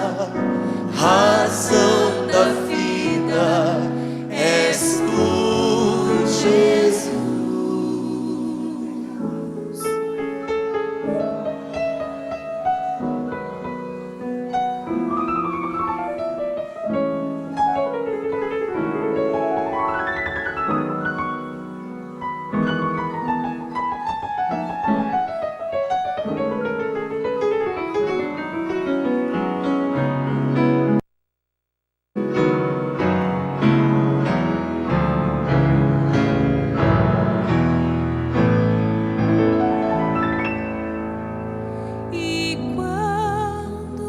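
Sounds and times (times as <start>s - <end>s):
piano runs and chords: 32.2s - 42.8s.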